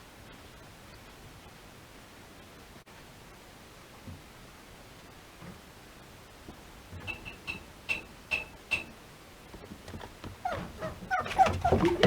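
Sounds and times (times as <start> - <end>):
puppies whimpering and whining: 10.4 - 12.0
puppy high squeaks: 10.4 - 12.0.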